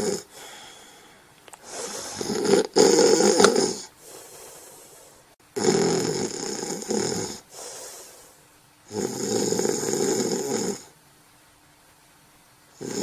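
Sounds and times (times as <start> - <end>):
loud snoring: 0.0 - 0.5, 1.7 - 4.9, 5.6 - 8.1, 8.9 - 10.9, 12.8 - 13.0
quiet breath: 0.0 - 2.3, 3.7 - 5.4, 7.4 - 8.6.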